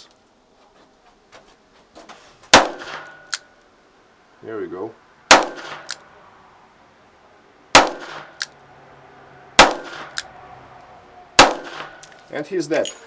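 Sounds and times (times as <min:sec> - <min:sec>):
fainter sharp crack: 0:02.5 - 0:03.5, 0:11.4 - 0:12.2.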